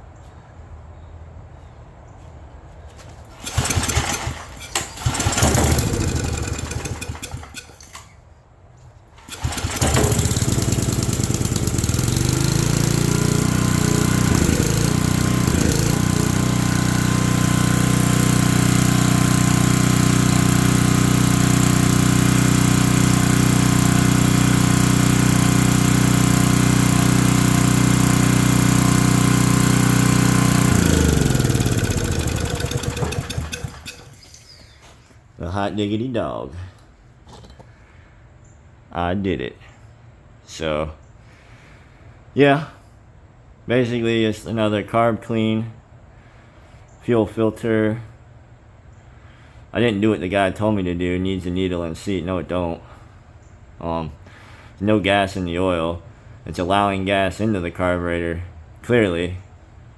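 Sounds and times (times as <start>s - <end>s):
generator engine running: 3.3s - 8.1s, 9.2s - 34.2s
recoil starter pulls: 3.3s - 8.2s, 9.2s - 34.7s.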